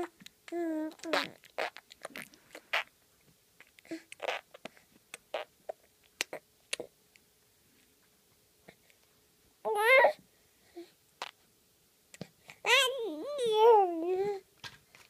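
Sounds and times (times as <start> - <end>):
child making mouth noises: 0.0 - 2.9
child voiced sound: 12.7 - 14.4.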